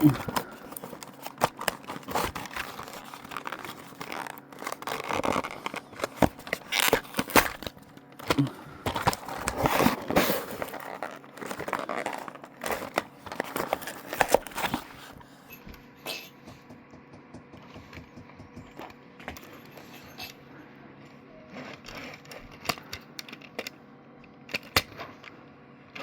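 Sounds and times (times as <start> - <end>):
packaging crinkling and tearing: 0.0 - 15.3.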